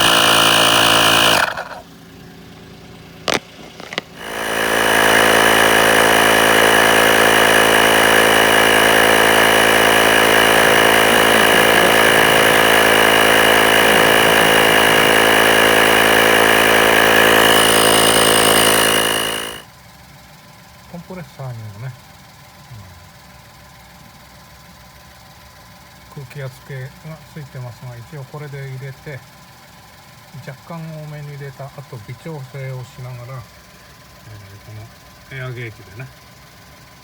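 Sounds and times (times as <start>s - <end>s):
air compressor whining: 0.0s - 19.7s
clicks: 3.3s - 4.2s.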